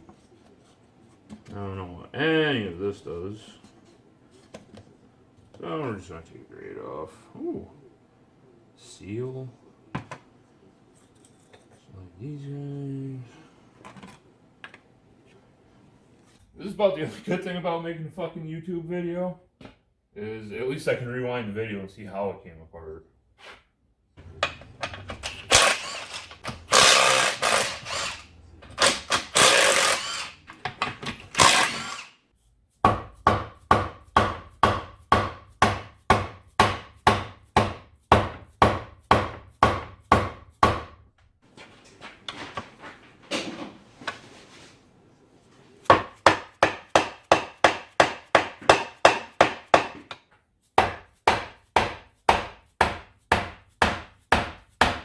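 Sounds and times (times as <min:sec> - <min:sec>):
scraping and knocks: 0:24.2 - 0:32.0
hammer striking metal: 0:45.9 - 0:50.2, 0:50.8 - 0:55.0.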